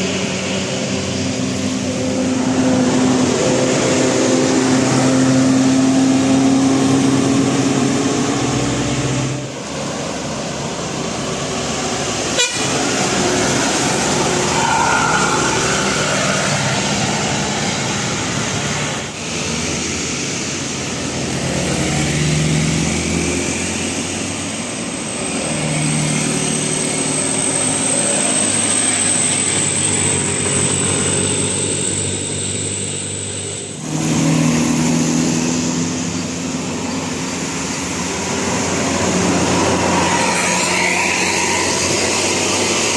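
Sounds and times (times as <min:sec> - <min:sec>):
road and engine noise: 0:00.0 - 0:42.9
bus musical horn: 0:12.3 - 0:13.2.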